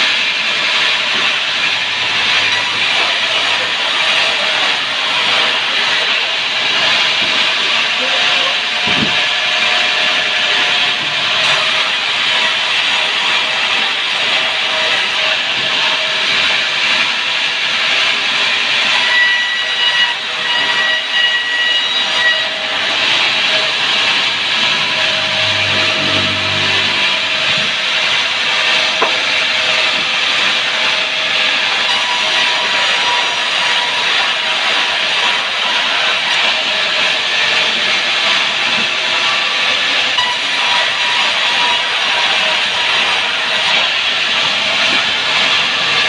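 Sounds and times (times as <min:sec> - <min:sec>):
saw blade cutting log: 0:00.0 - 0:46.0
brief low hum: 0:24.6 - 0:27.8.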